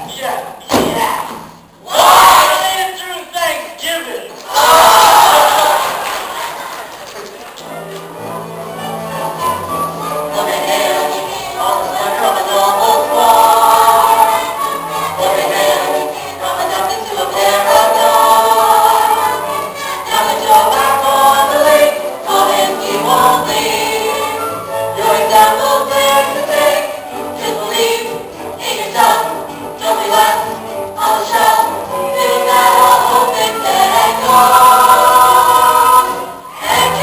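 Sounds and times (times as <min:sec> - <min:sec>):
instrumental accompaniment: 0:07.6 - 0:37.0.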